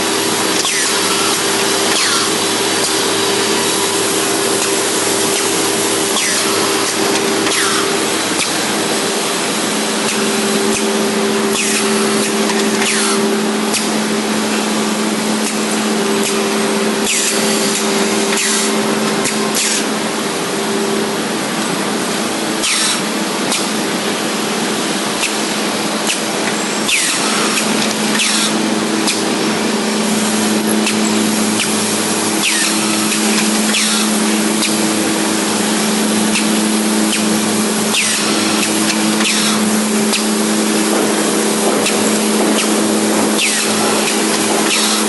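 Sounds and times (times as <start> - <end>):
drilling machine motor hum: 0.0 - 45.0.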